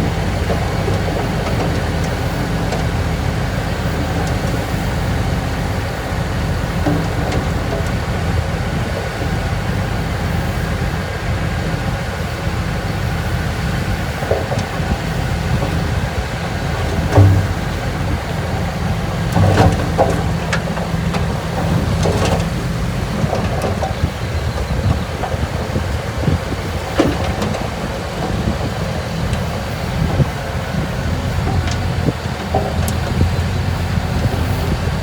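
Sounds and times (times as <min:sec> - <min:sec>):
heavy machinery diesel engine droning: 0:00.0 - 0:35.0
sharp knocks: 0:16.9 - 0:18.3.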